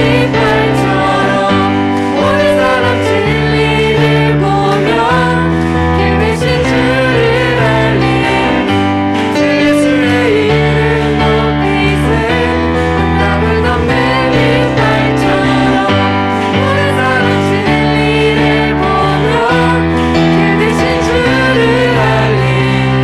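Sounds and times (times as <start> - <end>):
band playing worship song: 0.0 - 23.0
voices singing: 0.0 - 23.0.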